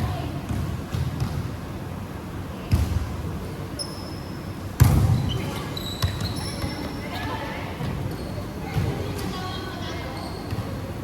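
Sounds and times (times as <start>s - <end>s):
basketball bouncing on court: 0.4s - 1.5s, 6.0s - 7.0s
sneaker squeaks on floor: 3.8s - 4.4s, 5.0s - 7.2s, 7.8s - 9.0s, 10.0s - 10.8s.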